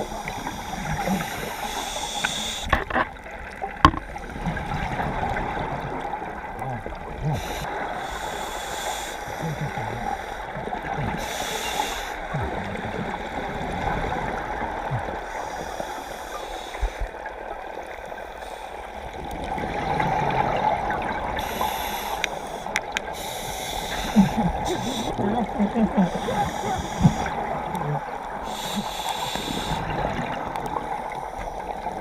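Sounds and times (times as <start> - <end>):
regulator breathing hiss: 0.0 - 2.8, 7.4 - 10.4, 11.2 - 12.2, 15.3 - 17.1, 21.4 - 25.2, 26.0 - 27.3, 28.4 - 29.9
steady underwater background: 0.0 - 32.0
gurgling exhaled bubbles: 12.2 - 15.5, 18.8 - 32.0.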